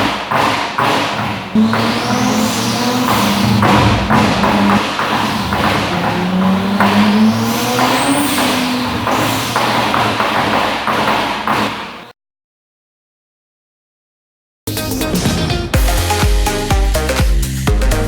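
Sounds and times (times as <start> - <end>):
car engine revving: 0.0 - 12.1.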